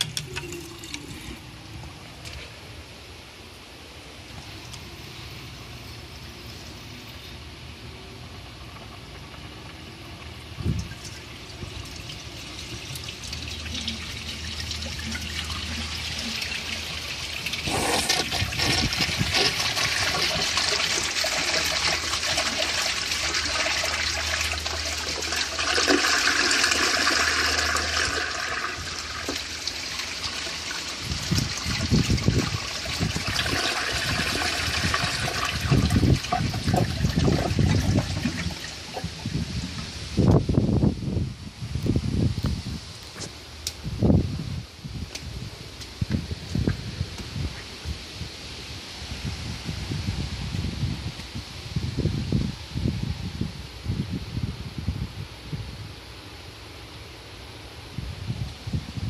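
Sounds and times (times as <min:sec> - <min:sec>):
toilet flushing water rush: 0:08.3 - 0:39.3.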